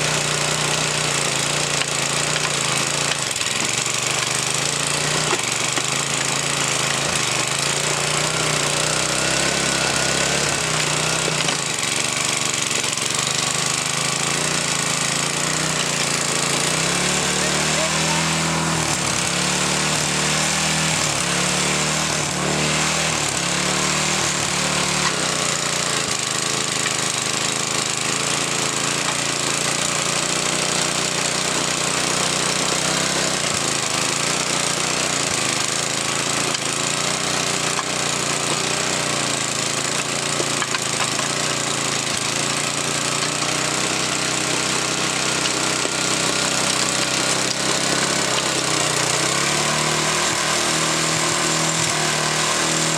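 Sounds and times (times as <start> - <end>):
tiller gas engine running: 0.0 - 52.9.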